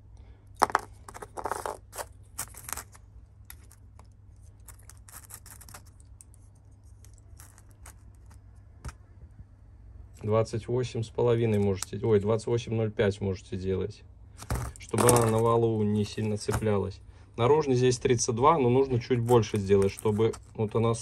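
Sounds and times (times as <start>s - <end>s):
small hard parts clicking and scraping: 0.4s - 9.0s, 11.3s - 12.4s, 14.4s - 16.8s, 18.8s - 21.0s.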